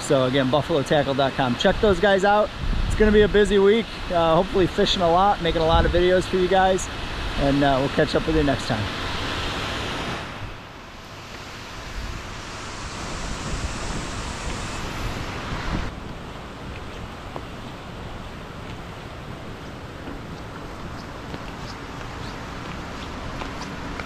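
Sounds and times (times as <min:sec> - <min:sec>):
outdoor rushing noise: 0:01.8 - 0:24.0.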